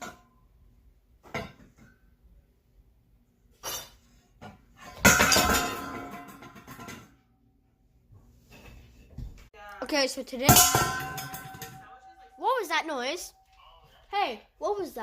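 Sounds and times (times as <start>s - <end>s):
glass breaking: 10.5s - 12.2s.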